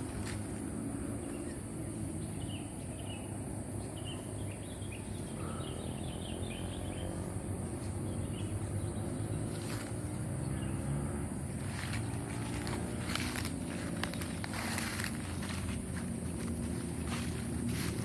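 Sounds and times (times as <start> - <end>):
steady low rumble: 11.2 - 18.0.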